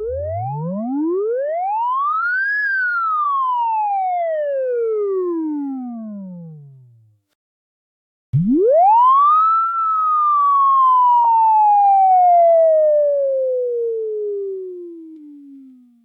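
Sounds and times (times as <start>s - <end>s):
synthesized swooping tone: 0.0s - 0.8s.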